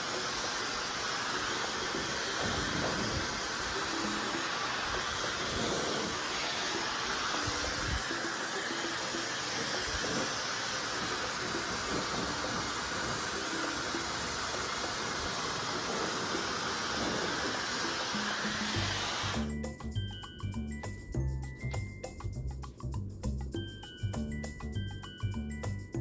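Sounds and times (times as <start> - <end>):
hair dryer running: 0.0 - 19.6.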